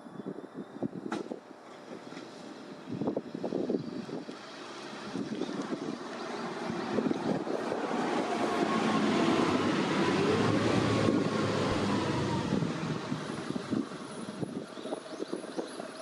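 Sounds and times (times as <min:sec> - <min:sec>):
bus passing by: 0:01.6 - 0:16.0.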